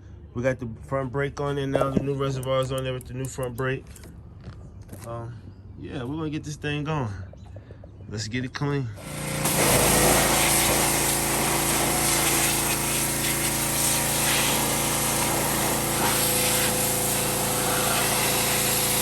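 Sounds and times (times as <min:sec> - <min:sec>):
pressure washer running: 0:09.0 - 0:19.0.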